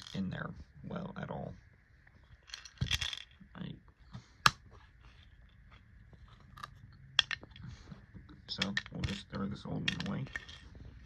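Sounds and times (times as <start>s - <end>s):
plastic parts clicking and knocking: 2.4s - 3.5s, 4.4s - 10.6s.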